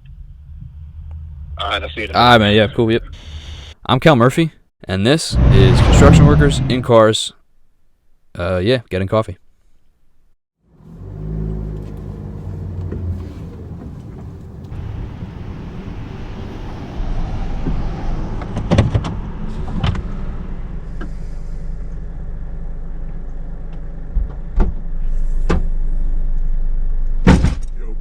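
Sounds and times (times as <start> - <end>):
road noise: 5.3 - 7.1, 10.6 - 27.1
car engine running: 10.8 - 17.0.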